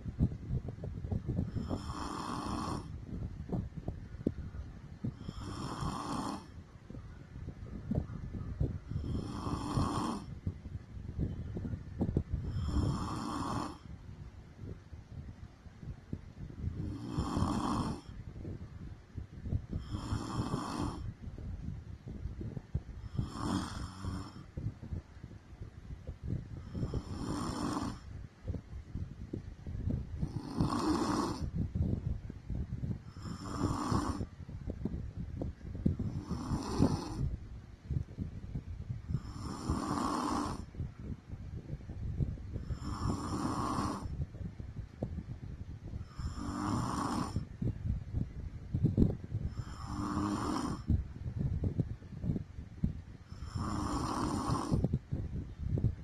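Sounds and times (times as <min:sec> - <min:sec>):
woman snoring: 0:01.4 - 0:02.9, 0:05.1 - 0:06.5, 0:09.0 - 0:10.3, 0:12.5 - 0:13.8, 0:16.8 - 0:18.1, 0:19.8 - 0:21.0, 0:23.1 - 0:24.5, 0:26.6 - 0:28.0, 0:30.2 - 0:31.5, 0:33.1 - 0:34.3, 0:36.1 - 0:37.2, 0:39.2 - 0:40.7, 0:42.6 - 0:44.1, 0:46.0 - 0:47.4, 0:49.5 - 0:50.9, 0:53.3 - 0:54.9.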